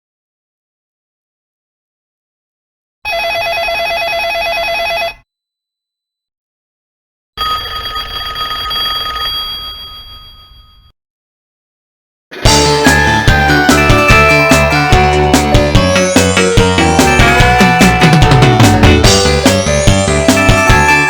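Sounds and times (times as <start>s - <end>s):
synthesized telephone ring: 3.1s - 5.3s, 7.4s - 10.9s, 16.9s - 21.0s.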